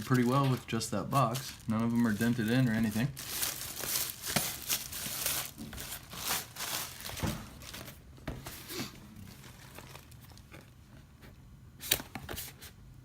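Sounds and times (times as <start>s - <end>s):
plastic wrap crinkling and tearing: 0.0s - 8.0s, 9.1s - 10.8s.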